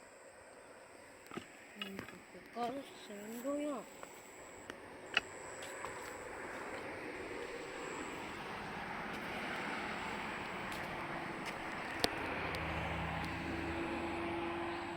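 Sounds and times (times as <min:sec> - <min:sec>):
low engine hum: 0:04.7 - 0:14.9
vehicle approaching: 0:04.8 - 0:14.9.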